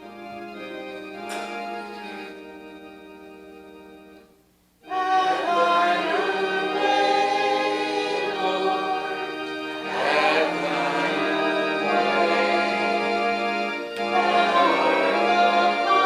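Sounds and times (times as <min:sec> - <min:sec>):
church organ: 0:00.0 - 0:16.0
congregation singing a hymn: 0:04.8 - 0:16.0.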